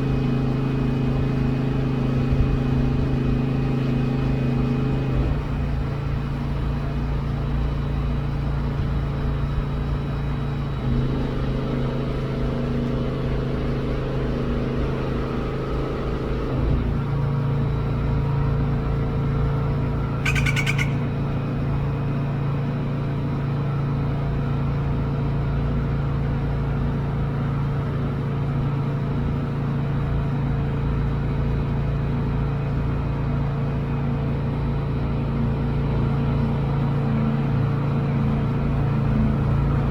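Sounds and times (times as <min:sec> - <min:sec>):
vehicle engine idling: 0:16.8 - 0:39.9
crow cawing: 0:20.2 - 0:21.3.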